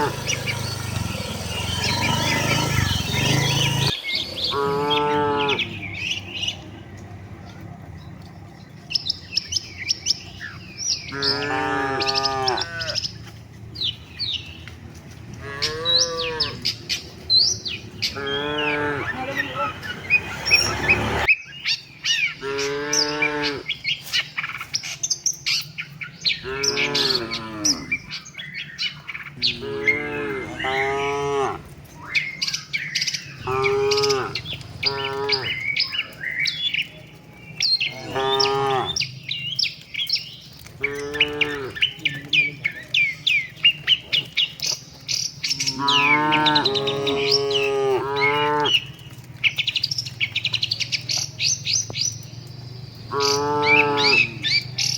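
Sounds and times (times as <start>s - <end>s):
cattle mooing: 0.0s - 6.1s, 11.1s - 13.1s, 15.3s - 16.8s, 18.0s - 21.3s, 22.4s - 23.7s, 26.4s - 28.2s, 29.4s - 31.9s, 33.4s - 36.0s, 37.8s - 39.1s, 40.8s - 42.6s, 45.5s - 49.1s, 53.1s - 54.8s
birds chirping: 0.0s - 54.9s.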